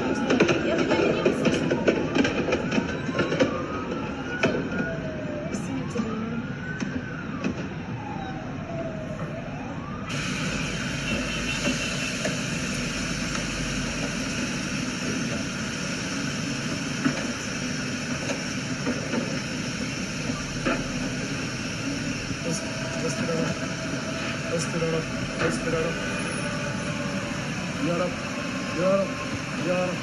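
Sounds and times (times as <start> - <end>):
siren wailing: 0.0 - 30.0
dense steady din: 9.8 - 30.0.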